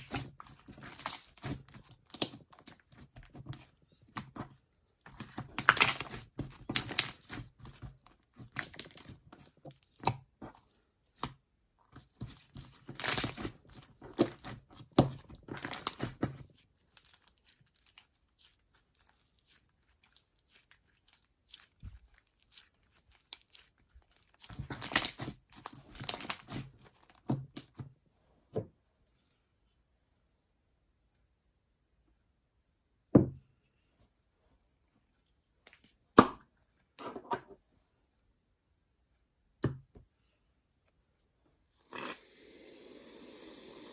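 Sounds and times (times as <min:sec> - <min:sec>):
slime crackling and tearing: 0:00.0 - 0:03.7, 0:05.2 - 0:10.1, 0:12.2 - 0:27.8.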